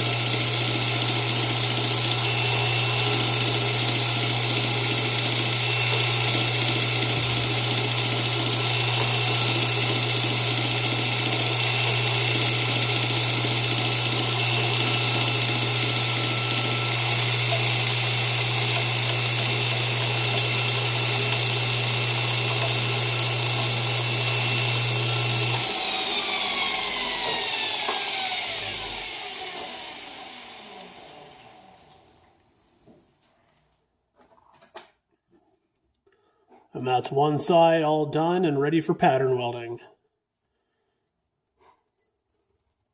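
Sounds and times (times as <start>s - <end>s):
motor spinning down whine: 0.0s - 32.1s
belt grinder grinding steel: 0.0s - 32.6s.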